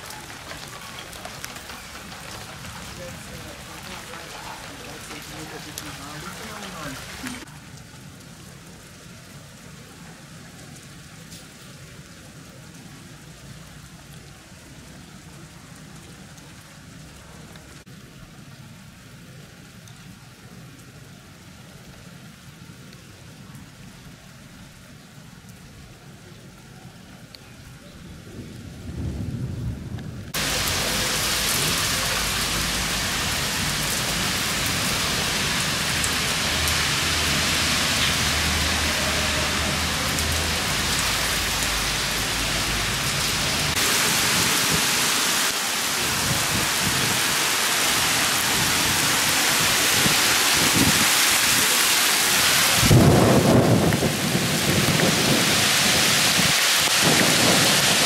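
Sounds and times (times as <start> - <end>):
heavy rain downpour: 0.0 - 58.0
low thunder rumbling: 27.8 - 34.0, 52.8 - 58.0.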